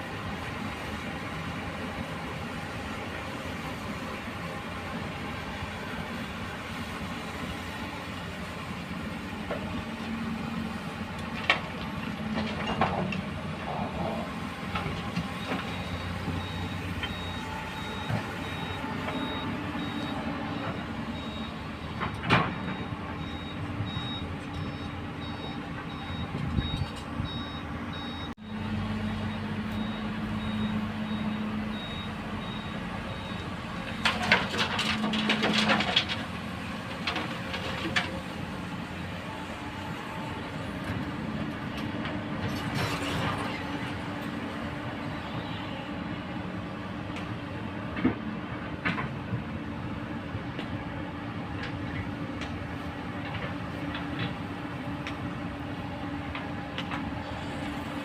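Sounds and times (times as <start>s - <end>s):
excavator diesel engine running: 0.0s - 58.0s
reversing alarm beeping: 15.4s - 34.2s.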